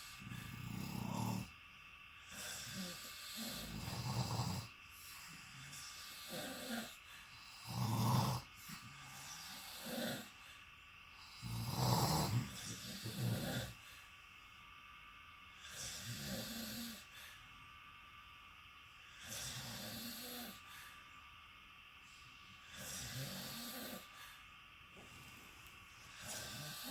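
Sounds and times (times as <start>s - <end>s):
people snoring: 0.0s - 1.5s, 2.3s - 10.5s, 11.2s - 13.8s, 15.6s - 17.1s, 19.2s - 20.6s, 22.7s - 24.2s, 26.1s - 26.9s.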